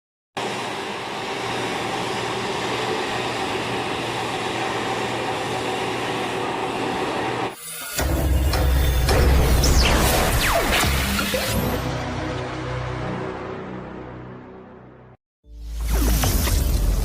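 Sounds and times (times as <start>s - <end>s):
machine tool running: 0.4s - 11.8s.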